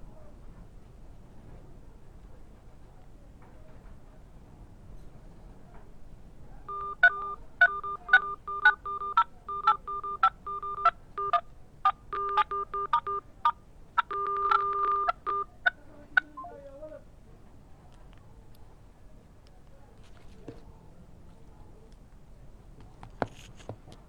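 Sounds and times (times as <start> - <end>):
keypad clicks and two-note beeps: 6.7 - 11.4, 12.1 - 13.2, 14.0 - 15.5.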